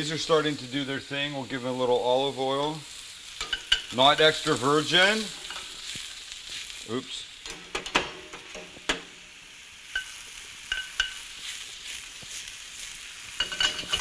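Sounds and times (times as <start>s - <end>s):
mushrooms sizzling in frying pan: 0.0s - 14.0s
utensil knocking against pan: 3.4s - 4.0s, 7.5s - 9.1s, 13.4s - 14.0s.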